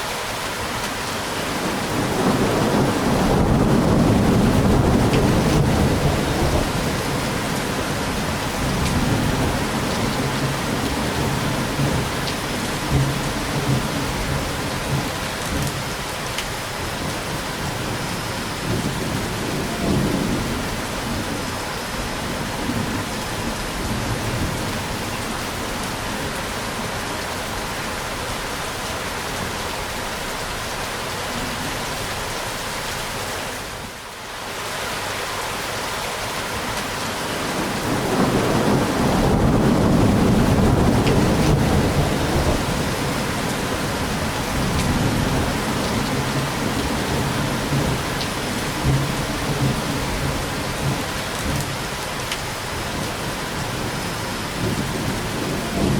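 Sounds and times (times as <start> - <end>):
steady rain: 0.0 - 55.9
thunder rumbling: 1.5 - 15.9, 16.6 - 26.4, 37.4 - 52.0, 52.7 - 55.9.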